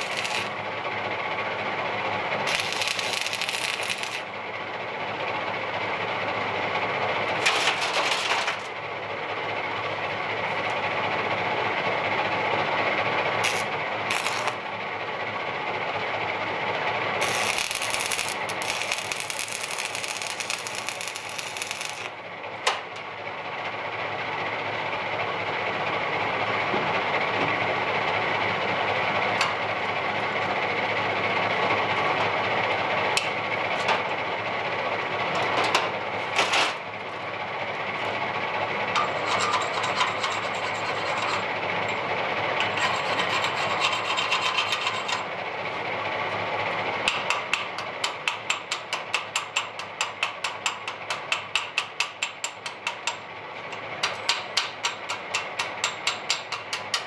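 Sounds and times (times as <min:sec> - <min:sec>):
welding arc crackling: 0:00.0 - 0:00.6, 0:02.4 - 0:04.3, 0:13.4 - 0:14.7, 0:17.2 - 0:22.2.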